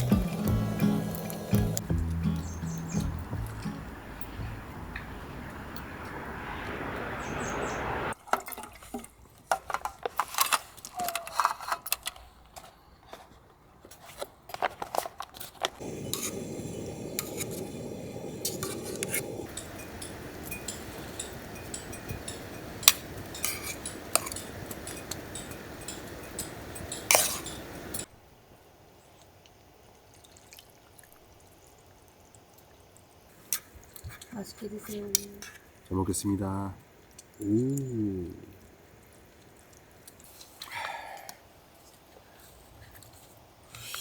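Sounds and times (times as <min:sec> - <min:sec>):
steady hiss: 0:00.0 - 0:08.2, 0:15.8 - 0:28.7
utensils clinking on dishes: 0:19.0 - 0:28.1.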